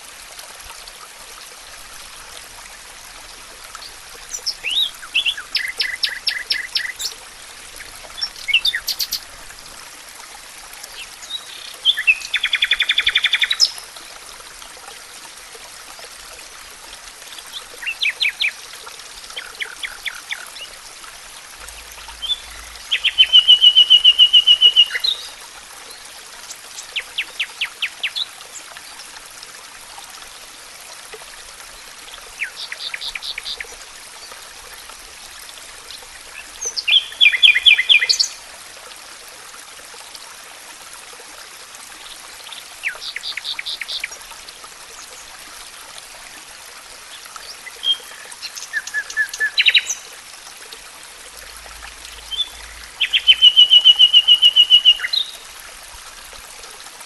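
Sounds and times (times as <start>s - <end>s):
flowing water rushing: 0.0s - 57.0s
songbirds singing trills: 3.8s - 7.2s, 8.2s - 9.3s, 21.8s - 25.4s, 36.6s - 38.4s, 47.4s - 50.1s, 52.0s - 55.4s.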